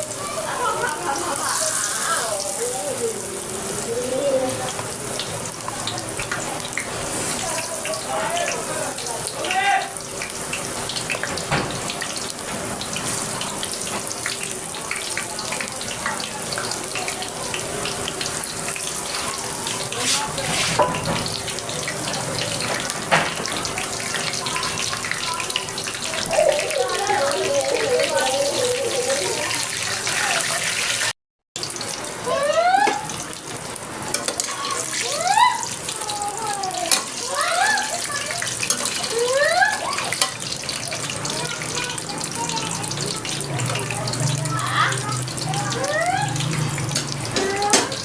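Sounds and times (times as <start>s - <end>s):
water running from tap: 0.0s - 48.0s
tap water splashing into sink: 11.1s - 12.2s, 22.6s - 25.7s.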